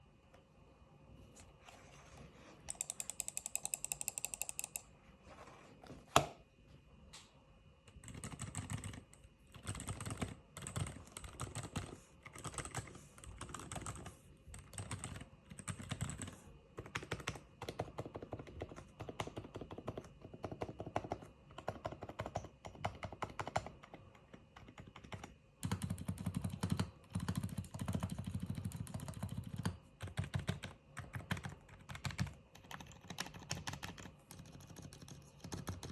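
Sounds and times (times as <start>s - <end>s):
mechanical keyboard typing: 2.7s - 4.9s, 7.9s - 35.9s.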